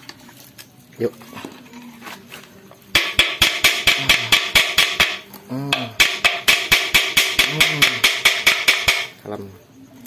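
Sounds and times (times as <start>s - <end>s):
music with clicking percussion: 2.9s - 9.2s.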